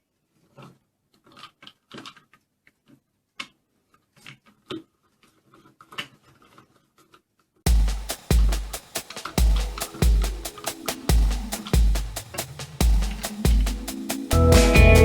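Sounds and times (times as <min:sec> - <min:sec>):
plastic toy parts clicking: 0:00.6 - 0:07.2.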